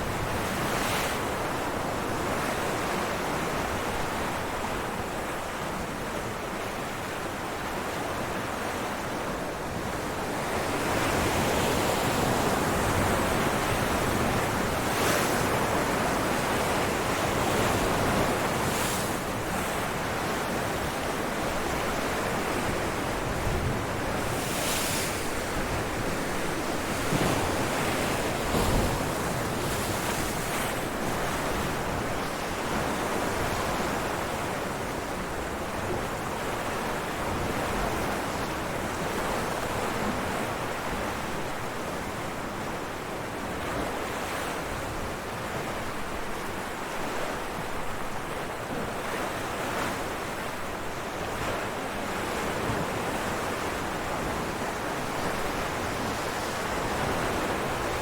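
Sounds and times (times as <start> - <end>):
ocean waves breaking on rocks: 10.5 - 34.2, 47.1 - 58.0.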